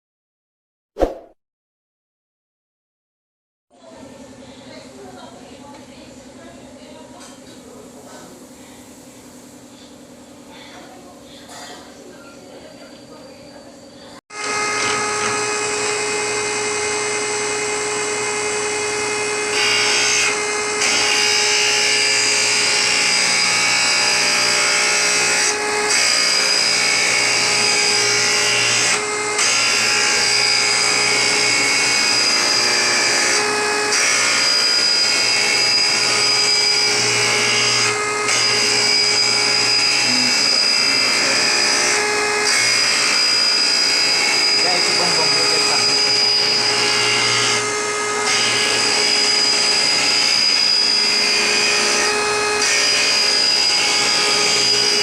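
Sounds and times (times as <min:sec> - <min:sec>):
blade grinding machine whine: 0:12.4 - 0:55.0.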